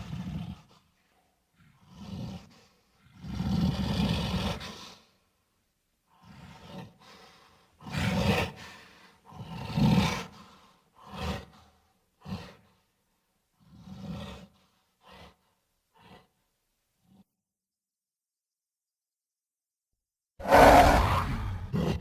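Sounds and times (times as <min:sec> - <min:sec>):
monster roaring: 0:20.4 - 0:22.0.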